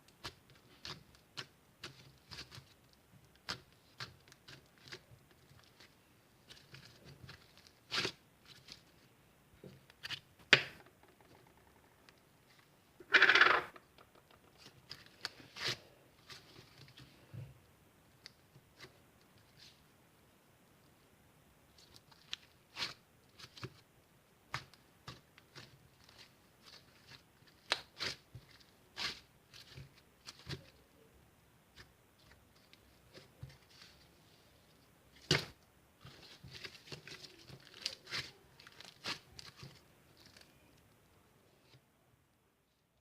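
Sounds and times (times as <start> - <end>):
objects tapping and clicking on desk: 13.0 - 14.4.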